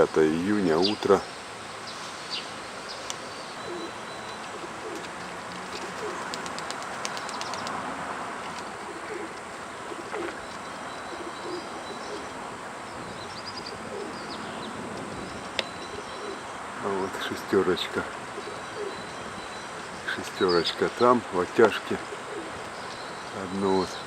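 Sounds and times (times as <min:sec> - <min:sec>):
background hiss: 0:00.0 - 0:24.0
pigeons cooing: 0:02.4 - 0:24.0
faint clicks: 0:03.0 - 0:03.2.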